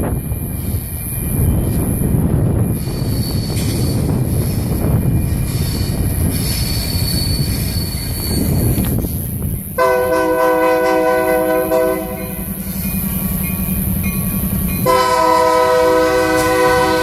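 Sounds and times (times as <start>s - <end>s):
moving train noise: 0.0s - 17.0s
high wheel squeal: 2.7s - 9.7s
locomotive air horn chord: 9.8s - 12.5s, 14.8s - 17.0s.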